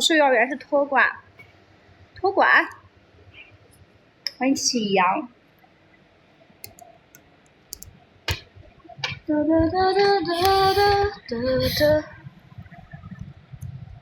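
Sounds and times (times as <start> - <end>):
sharp click: 6.6 - 9.2
woman singing: 9.2 - 12.2.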